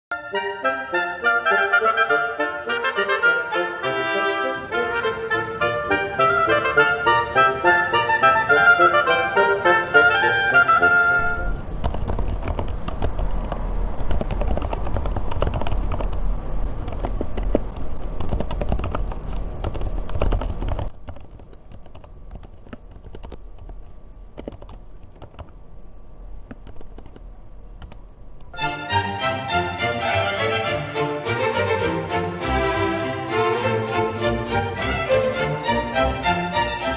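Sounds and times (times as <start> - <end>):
typing on a keyboard: 11.7 - 25.6.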